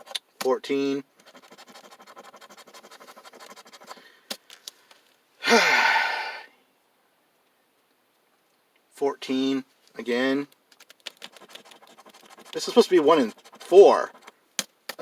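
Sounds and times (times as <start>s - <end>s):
scratching lottery ticket: 0.0s - 4.1s, 10.7s - 15.0s
loud sigh: 5.4s - 6.6s.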